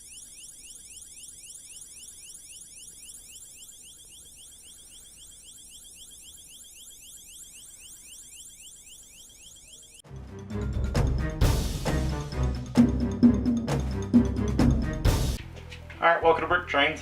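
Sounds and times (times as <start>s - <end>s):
rising electronic chirps: 0.0s - 10.1s.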